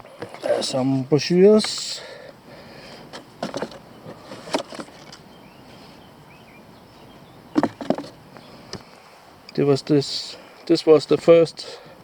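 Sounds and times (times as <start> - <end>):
faint bird chirps: 5.2 - 7.6.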